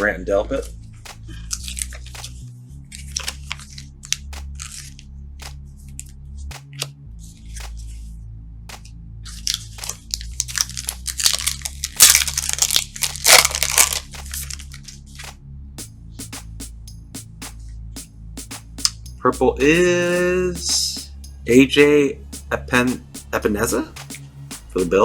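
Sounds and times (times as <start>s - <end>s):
quiet background music: 0.0s - 25.0s
cards clicking: 1.1s - 2.4s, 3.0s - 4.9s, 8.7s - 15.3s
wrappers tearing and crinkling: 9.4s - 14.9s.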